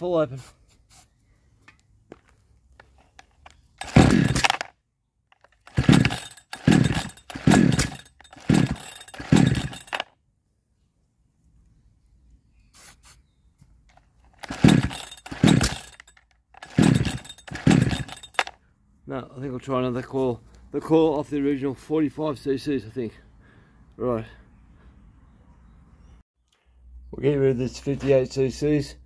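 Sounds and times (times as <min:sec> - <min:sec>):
chainsaw pull-start cranking: 0:03.1 - 0:04.7, 0:05.3 - 0:10.1, 0:14.2 - 0:18.6.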